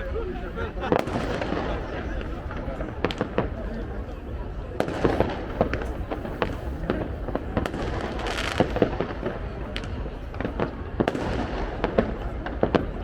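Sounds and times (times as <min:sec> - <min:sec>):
fireworks bangs: 0:00.0 - 0:13.0
fireworks crackling hiss: 0:04.8 - 0:13.0.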